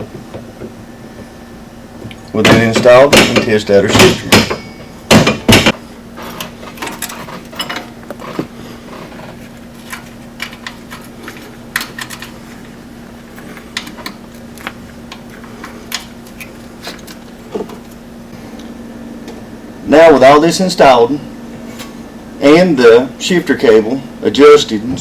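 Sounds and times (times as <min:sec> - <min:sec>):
steady low hum: 0:00.0 - 0:25.0.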